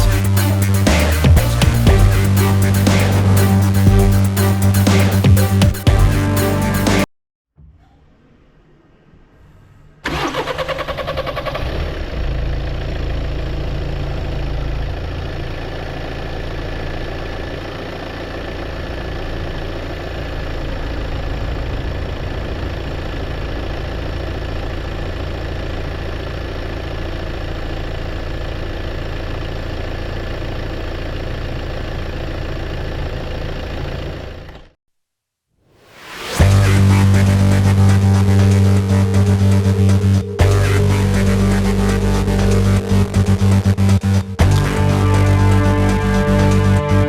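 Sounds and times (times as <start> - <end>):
diesel engine cranking: 10.0 - 34.7, 36.4 - 47.0
diesel engine idling: 10.0 - 34.7, 36.4 - 47.0.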